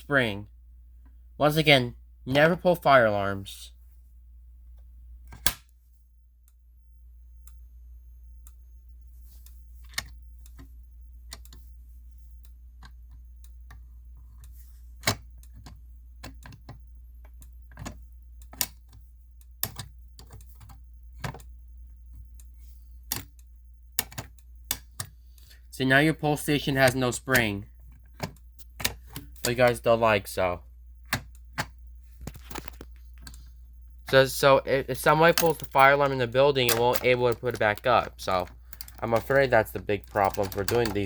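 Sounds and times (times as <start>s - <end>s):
low steady hum: 0.0s - 41.0s
fire alarm pull station clicking: 35.3s - 41.0s.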